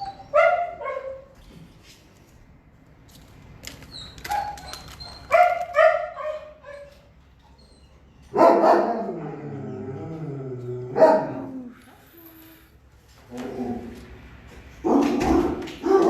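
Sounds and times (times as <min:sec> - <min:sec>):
dog barking: 0:00.0 - 0:01.3, 0:05.3 - 0:06.9, 0:08.3 - 0:09.4, 0:10.9 - 0:11.6, 0:14.8 - 0:16.0.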